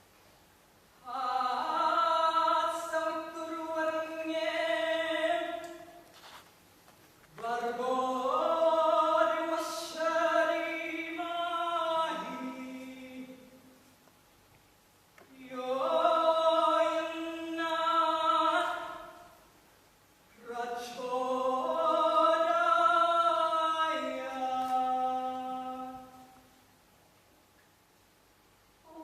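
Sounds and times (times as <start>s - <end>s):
choir singing a cappella: 1.0s - 5.7s, 7.4s - 13.5s, 15.4s - 19.2s, 20.4s - 26.3s.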